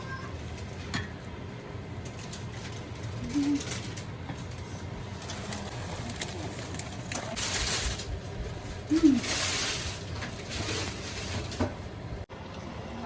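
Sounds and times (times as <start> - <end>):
dove cooing: 3.1 - 4.0, 8.8 - 9.8.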